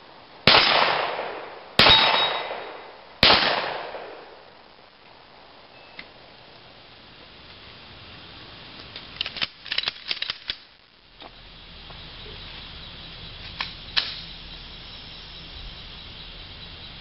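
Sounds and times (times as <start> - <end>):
pistol shots: 0.4 - 4.4.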